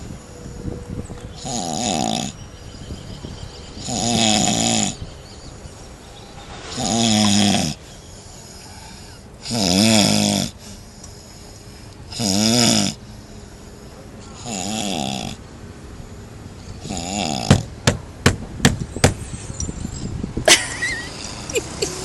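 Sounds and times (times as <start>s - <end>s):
person snoring heavily: 3.8s - 5.0s, 6.7s - 7.8s, 8.4s - 10.6s, 12.1s - 13.0s, 14.4s - 15.4s, 16.8s - 17.7s.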